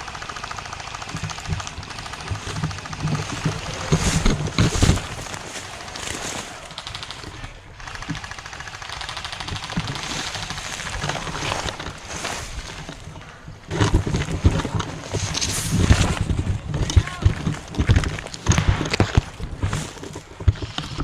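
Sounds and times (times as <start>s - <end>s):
airsoft guns firing bursts: 0.0s - 20.8s
thumps and rustling: 1.4s - 6.7s, 9.7s - 21.0s.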